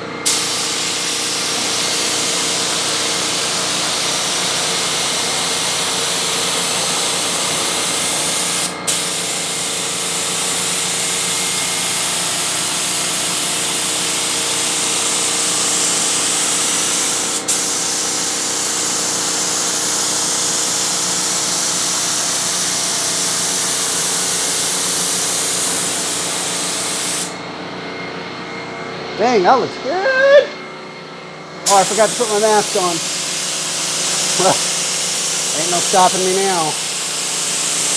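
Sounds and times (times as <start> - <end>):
spray gun hissing: 0.2 - 27.4, 31.6 - 37.9
steady hum: 28.6 - 33.4, 34.0 - 34.7, 35.4 - 36.8.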